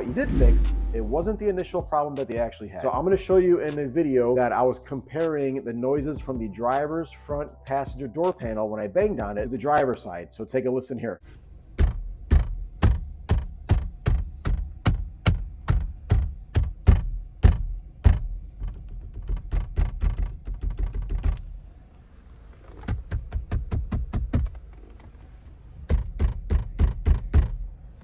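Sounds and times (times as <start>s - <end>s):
hand banging on car door: 11.8s - 21.4s, 25.9s - 27.6s.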